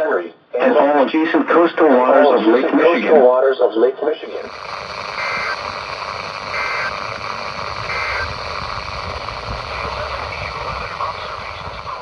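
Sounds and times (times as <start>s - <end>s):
heavy static hiss: 4.2s - 12.0s
screeching digital data bursts: 4.4s - 12.0s
low rumble: 4.5s - 12.0s.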